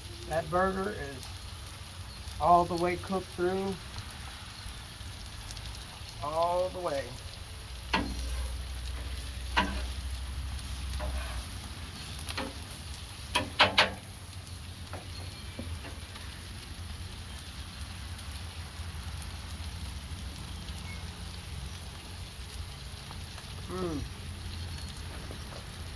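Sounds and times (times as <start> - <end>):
food sizzling on hot surface: 0.0 - 25.9
sharp clicks or knocks: 13.3 - 14.0.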